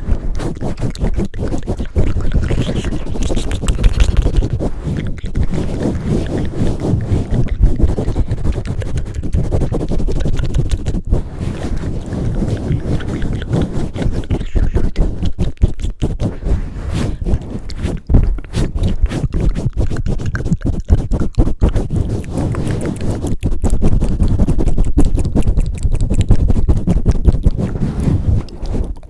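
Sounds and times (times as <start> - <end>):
hands rubbing on microphone: 0.0 - 29.0
quick muffled thumps: 1.1 - 21.8.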